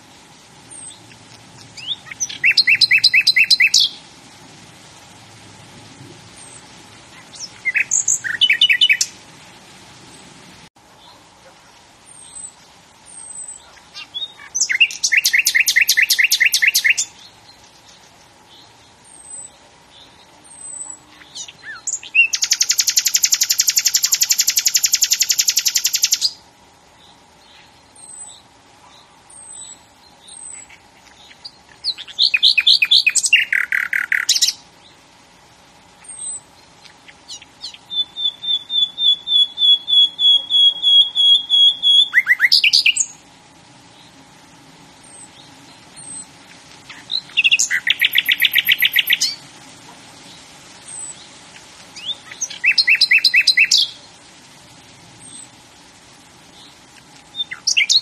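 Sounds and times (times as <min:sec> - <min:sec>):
songbird trilling: 0:00.7 - 0:04.0, 0:06.4 - 0:09.2, 0:12.1 - 0:26.4, 0:29.3 - 0:34.6, 0:36.0 - 0:43.2, 0:45.0 - 0:46.3, 0:46.9 - 0:49.4, 0:52.0 - 0:54.0, 0:57.3 - 0:58.0
faint high bird calls: 0:00.7 - 0:04.1, 0:06.4 - 0:09.2, 0:10.9 - 0:26.4, 0:27.0 - 0:34.6, 0:36.0 - 0:43.2, 0:45.0 - 0:54.2, 0:56.5 - 0:58.0.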